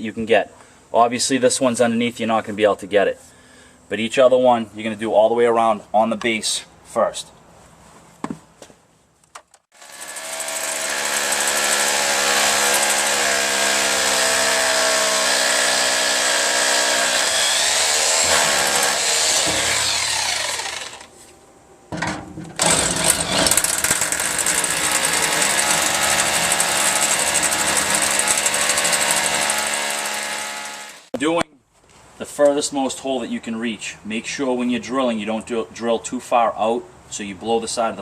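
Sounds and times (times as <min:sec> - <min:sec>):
hammer drill boring into concrete: 0:09.8 - 0:21.1, 0:22.6 - 0:31.1.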